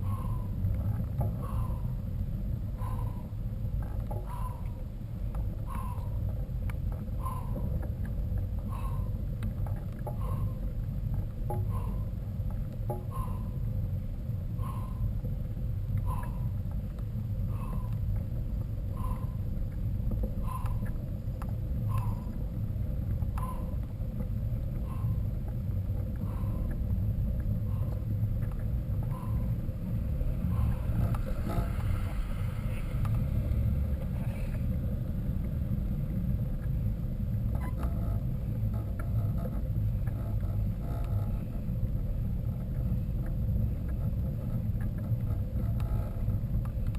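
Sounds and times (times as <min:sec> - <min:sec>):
low rumble of bike riding: 0:00.0 - 0:46.9.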